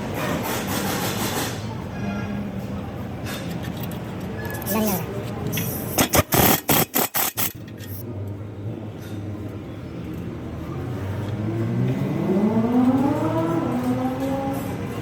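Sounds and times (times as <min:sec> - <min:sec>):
car engine accelerating: 0:10.4 - 0:15.0.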